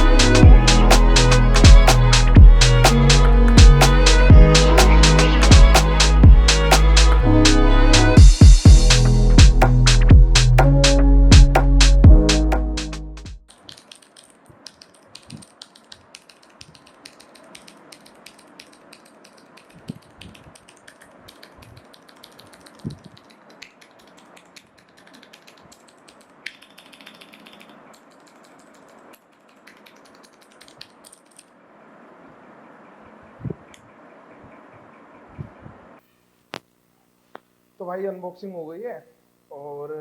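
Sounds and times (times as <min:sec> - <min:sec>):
mechanical keyboard typing: 0:13.5 - 0:31.5.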